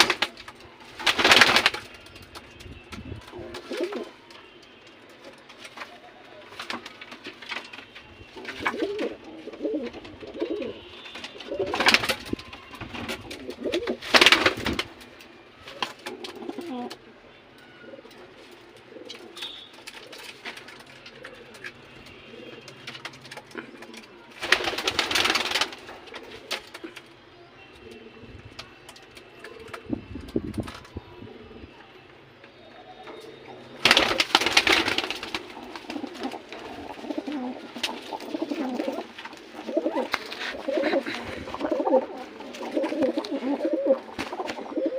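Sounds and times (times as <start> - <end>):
pigeons cooing: 3.3 - 4.2, 8.4 - 12.4, 13.1 - 14.8, 16.1 - 17.0, 17.8 - 26.8, 33.0 - 44.9.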